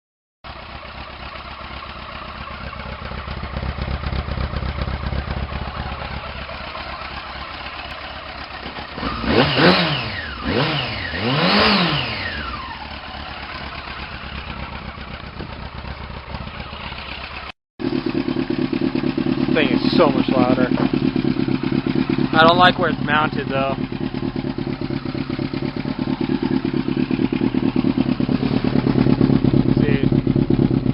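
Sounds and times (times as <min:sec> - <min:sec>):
motorcycle engine idling: 0:00.5 - 0:30.9
motorcycle engine revving: 0:00.5 - 0:30.9.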